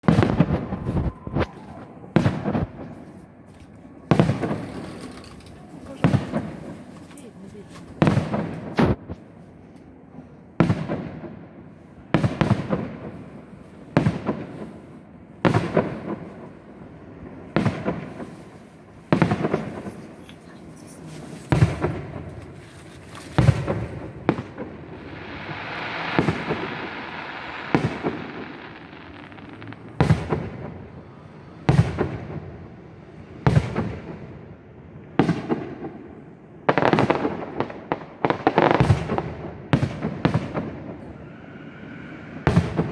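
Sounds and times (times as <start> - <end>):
firework shells bursting: 0.0 - 3.2, 19.2 - 32.1
firework hissing: 0.1 - 3.0, 19.7 - 31.9.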